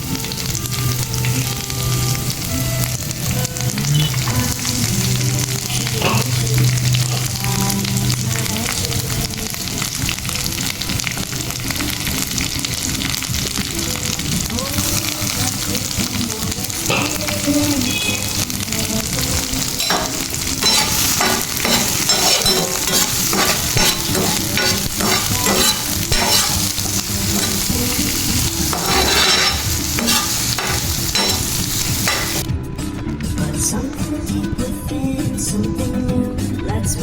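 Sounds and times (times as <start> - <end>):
food sizzling in a pan: 0.0 - 32.5
utensil scraping a pan: 19.8 - 32.4.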